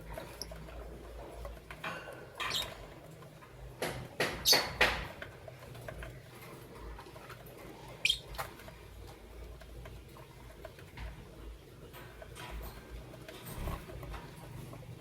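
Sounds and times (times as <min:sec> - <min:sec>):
lovebirds chirping: 0:07.8 - 0:08.5.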